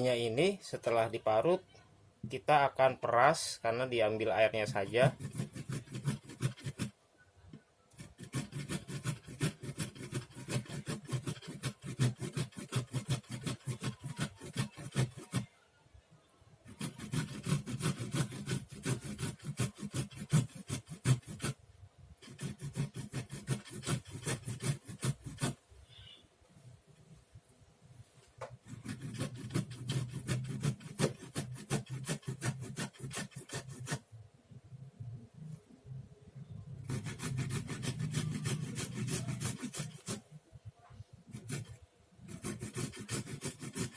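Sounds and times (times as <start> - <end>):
ginger rasping on a grater: 4.5 - 7.0, 7.9 - 15.5, 16.7 - 21.6, 22.2 - 25.6, 28.6 - 34.0, 36.8 - 40.2, 41.3 - 43.9.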